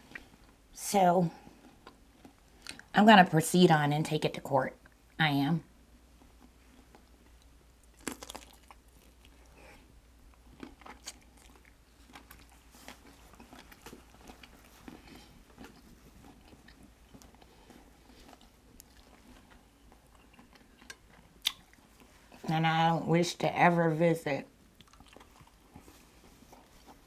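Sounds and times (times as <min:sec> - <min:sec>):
person biting and chewing food: 0:06.3 - 0:22.5, 0:24.7 - 0:27.0.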